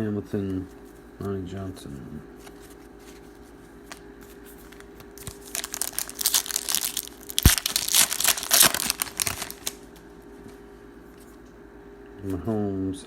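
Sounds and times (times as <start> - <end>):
plastic wrapper tearing and crinkling: 4.7 - 9.8.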